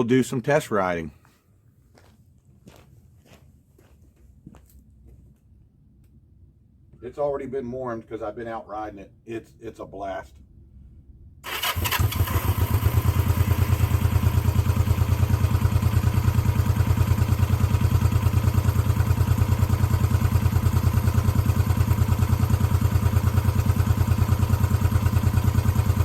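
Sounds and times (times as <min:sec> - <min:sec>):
motorcycle engine idling: 0:11.6 - 0:26.0.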